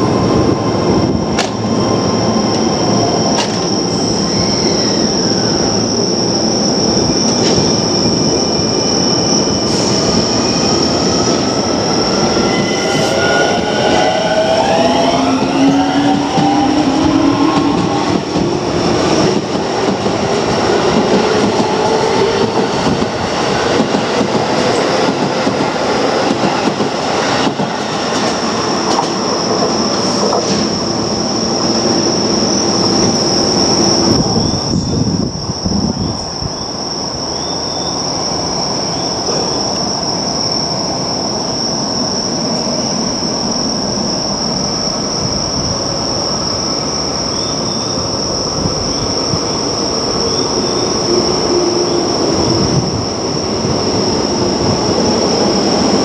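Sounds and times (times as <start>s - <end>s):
electric train running on rails: 0.0s - 56.0s
train motor whine: 9.4s - 19.5s.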